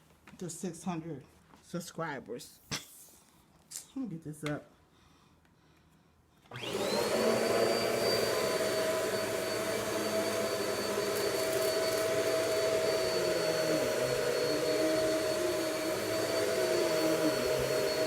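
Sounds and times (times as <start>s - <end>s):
vacuum cleaner motor: 6.5s - 18.0s.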